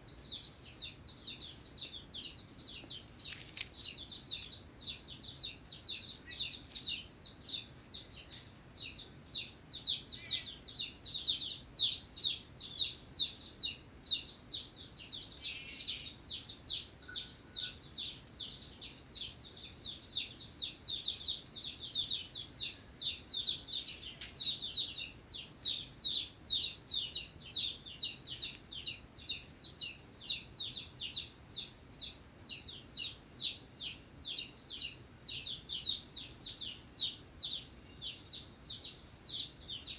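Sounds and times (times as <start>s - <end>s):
small bird chirping: 0.0s - 39.9s.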